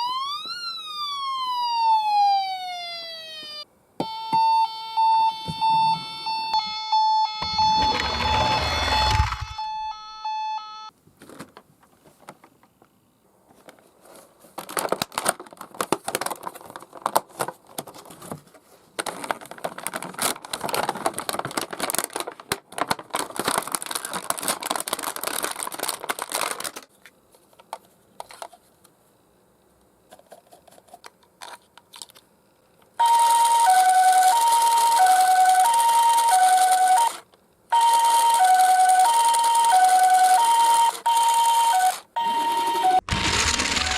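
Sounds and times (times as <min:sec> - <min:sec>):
toy siren hi-lo wail: 0:00.0 - 0:10.9, 0:33.0 - 0:37.2, 0:37.8 - 0:43.9
plastic packaging crinkling: 0:13.5 - 0:27.0, 0:43.0 - 0:43.9.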